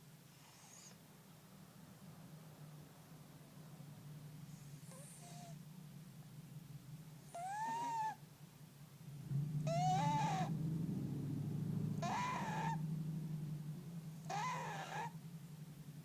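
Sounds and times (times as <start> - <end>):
cat snoring nasal squeak: 0.3 - 1.0, 4.5 - 5.6, 7.3 - 8.2, 9.6 - 10.5, 12.0 - 12.8, 14.3 - 15.1
low rumble: 2.0 - 16.0.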